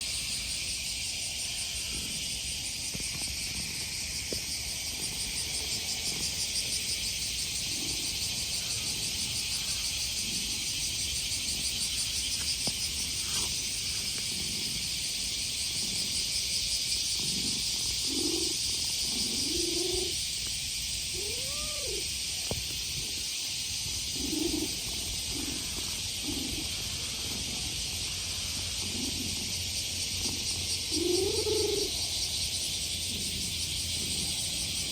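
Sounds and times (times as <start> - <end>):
cicadas singing: 0.0 - 34.9.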